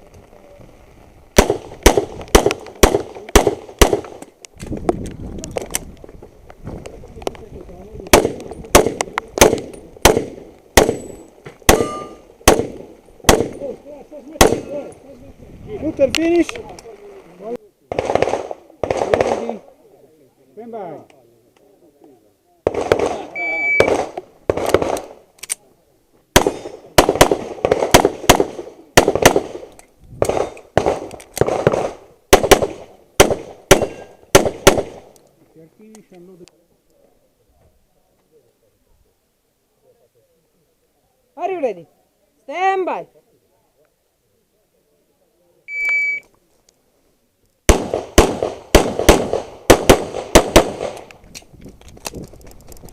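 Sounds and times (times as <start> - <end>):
handgun shots: 11.7 - 13.6
metallic ringing: 11.8 - 12.2.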